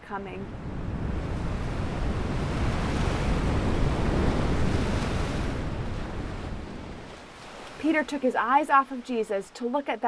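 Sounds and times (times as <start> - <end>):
gusting wind: 0.0 - 9.4
ocean wave rushing: 0.2 - 8.7.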